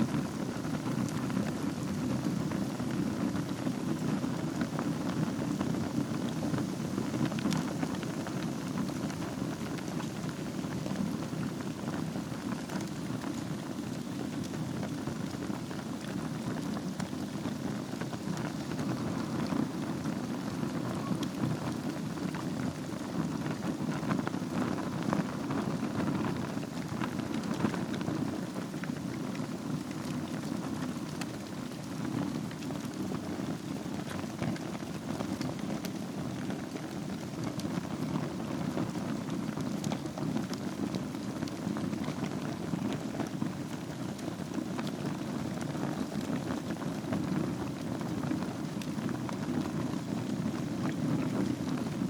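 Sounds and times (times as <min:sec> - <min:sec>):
fire crackling and popping: 0:00.0 - 0:52.0.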